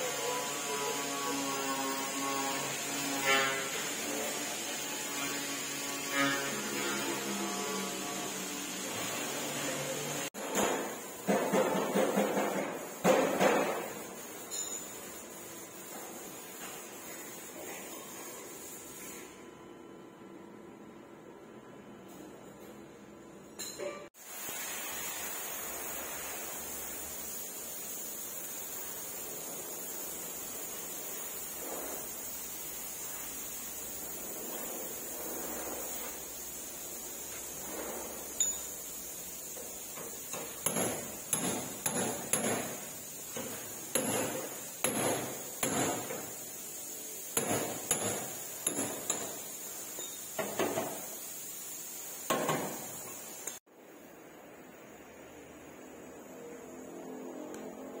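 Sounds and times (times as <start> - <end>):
steady hiss: 0.0 - 19.2, 24.2 - 57.7
hammer striking metal: 43.9 - 46.2, 47.4 - 49.4.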